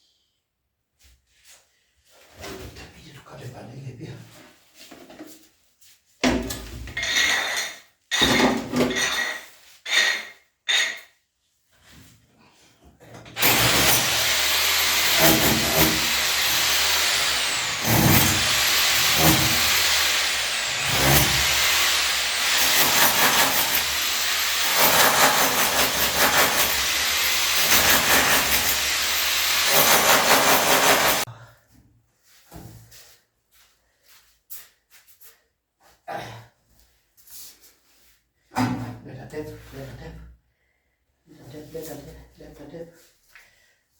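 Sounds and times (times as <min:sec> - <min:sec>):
power tool whining under load: 0:13.3 - 0:31.3.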